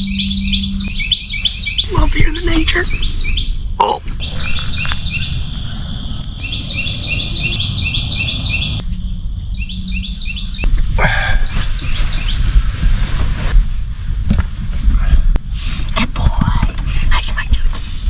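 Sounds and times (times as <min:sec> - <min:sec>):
songbird singing: 0:00.0 - 0:13.9
steady low rumble: 0:00.0 - 0:18.0.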